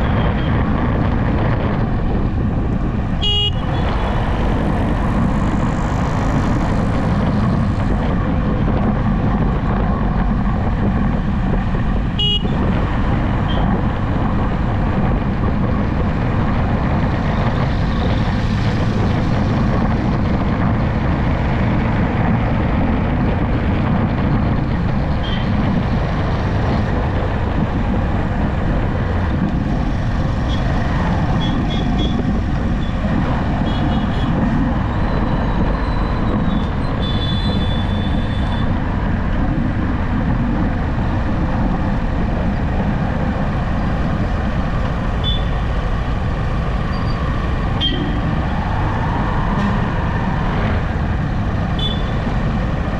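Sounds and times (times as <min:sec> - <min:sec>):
road and wind noise: 0:00.0 - 0:52.9
vehicle engine hum: 0:00.0 - 0:52.9.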